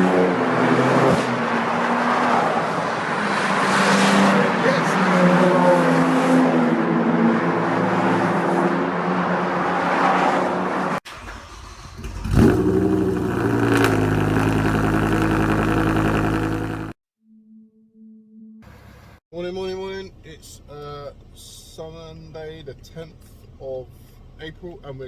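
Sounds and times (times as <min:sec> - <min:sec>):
car engine revving: 0:11.1 - 0:17.0
car engine running: 0:12.0 - 0:17.0.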